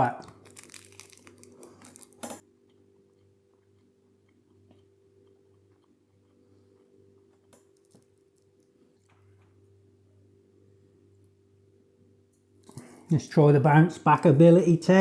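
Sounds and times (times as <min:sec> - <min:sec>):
person quietly chewing: 0:00.2 - 0:09.6.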